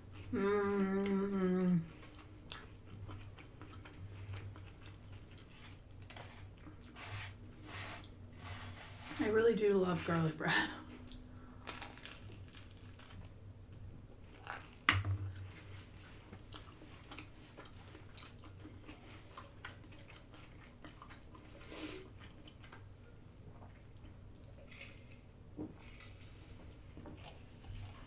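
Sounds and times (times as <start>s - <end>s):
person chewing food: 0.0s - 7.2s, 14.2s - 28.0s.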